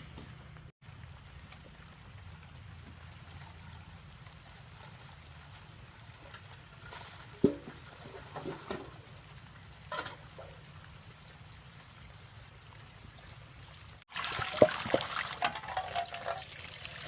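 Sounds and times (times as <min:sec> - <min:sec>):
water trickling and splashing: 0:00.8 - 0:17.0.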